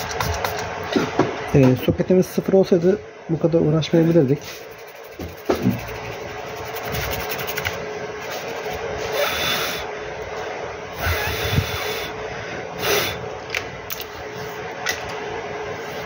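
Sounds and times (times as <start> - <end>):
brush scrubbing circuit board: 3.9 - 9.3.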